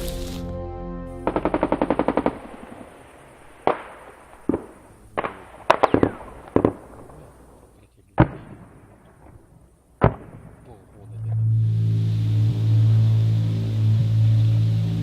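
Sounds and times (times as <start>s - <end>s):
automatic gunfire: 1.2s - 2.8s, 3.6s - 7.2s
single gunshots with echo: 1.3s - 7.3s, 8.2s - 9.4s.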